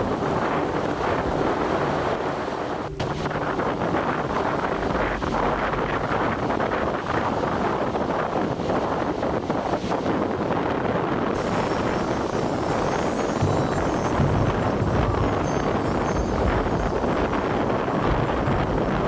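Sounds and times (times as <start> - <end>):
wind buffeting microphone: 0.0 - 19.0
deep rumble: 11.4 - 19.0.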